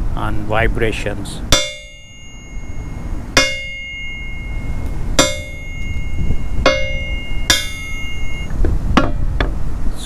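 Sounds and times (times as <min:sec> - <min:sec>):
hammer striking steel beam ringing: 0:01.5 - 0:09.3.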